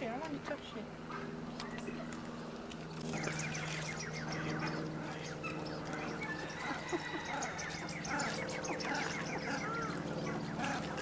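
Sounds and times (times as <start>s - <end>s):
steady low hum: 0.0s - 11.0s
waterfowl and birds calling: 2.9s - 11.0s.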